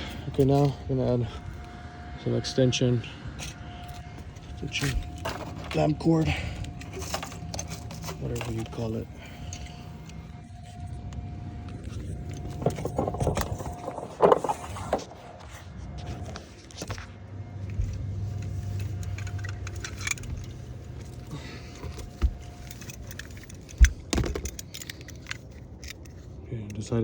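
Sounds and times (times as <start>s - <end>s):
steady low hum: 0.0s - 27.0s
lamp cord clicking and rattling: 18.8s - 27.0s.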